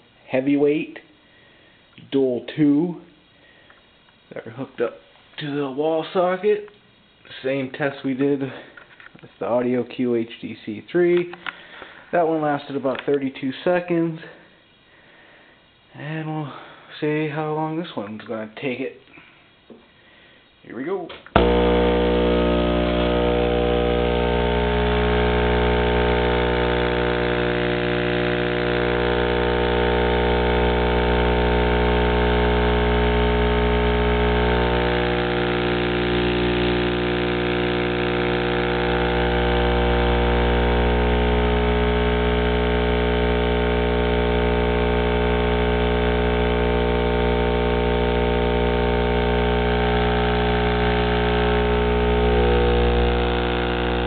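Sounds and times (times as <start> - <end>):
subwoofer buzzy hum: 21.1 - 54.0.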